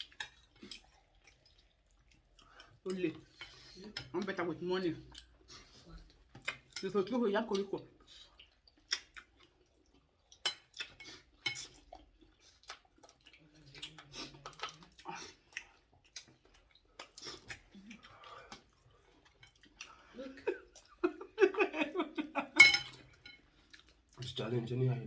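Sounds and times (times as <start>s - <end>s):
chewing: 0.0s - 21.4s, 22.6s - 24.5s
spoons clinking against bowls: 22.6s - 23.4s.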